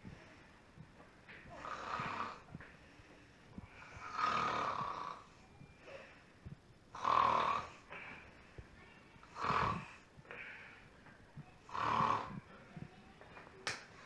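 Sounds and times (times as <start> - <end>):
soft breaths: 0.0 - 14.0
person snoring: 1.5 - 2.5, 3.7 - 5.4, 6.9 - 8.2, 9.2 - 10.5, 11.6 - 12.5.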